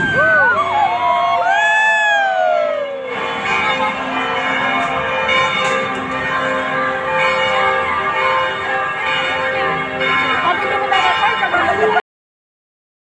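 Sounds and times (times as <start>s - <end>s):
bells ringing: 2.6s - 12.0s.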